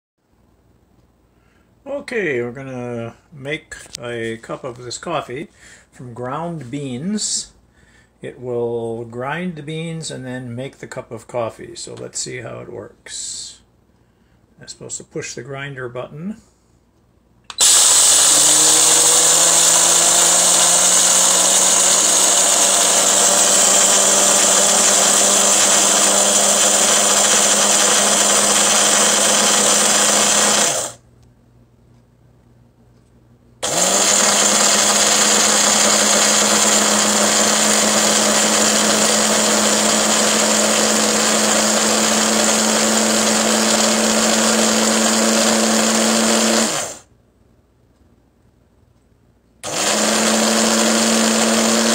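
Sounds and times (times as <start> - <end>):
coffee grinder grinding beans: 17.5 - 31.0, 33.6 - 47.0, 49.6 - 51.9.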